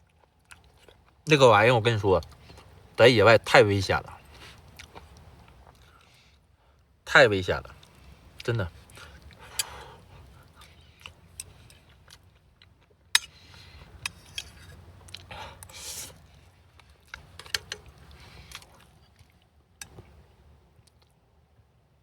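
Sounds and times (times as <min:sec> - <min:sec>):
person chewing: 0:00.0 - 0:01.2, 0:04.5 - 0:06.1, 0:08.8 - 0:20.1.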